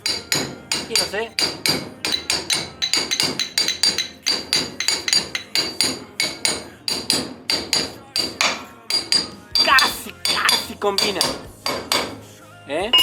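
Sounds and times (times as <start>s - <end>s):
hammering on metal: 0.0s - 12.3s.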